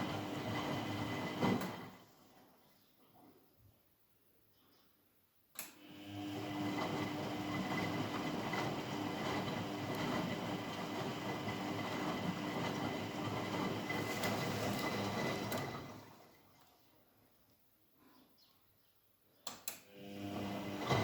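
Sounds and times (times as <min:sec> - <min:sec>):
washing machine running hum: 0:00.0 - 0:02.5, 0:05.8 - 0:16.4, 0:19.9 - 0:21.0.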